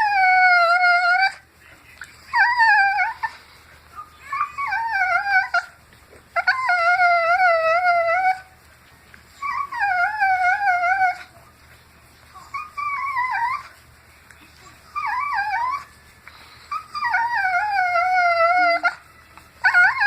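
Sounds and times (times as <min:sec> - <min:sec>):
dog howling whines: 0:00.0 - 0:01.4, 0:02.3 - 0:03.3, 0:04.2 - 0:05.8, 0:06.4 - 0:08.5, 0:09.4 - 0:11.3, 0:15.0 - 0:15.9, 0:16.7 - 0:19.0, 0:19.6 - 0:20.0.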